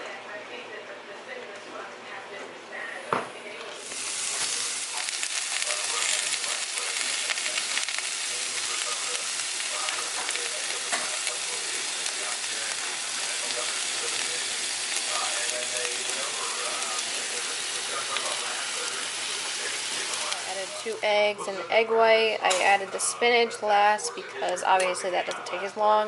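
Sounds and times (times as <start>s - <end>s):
food sizzling in a pan: 3.8s - 21.4s.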